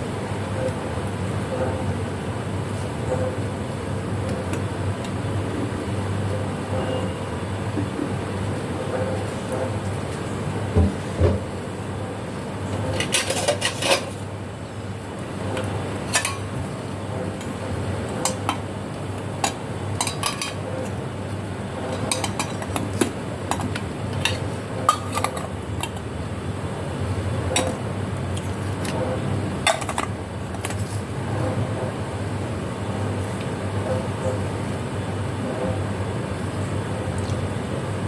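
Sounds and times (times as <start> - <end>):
steady low hum: 0.0 - 38.0
metal utensils clinking on cookware: 12.8 - 14.2, 16.1 - 16.5, 19.4 - 20.7, 21.9 - 26.0, 29.6 - 31.0.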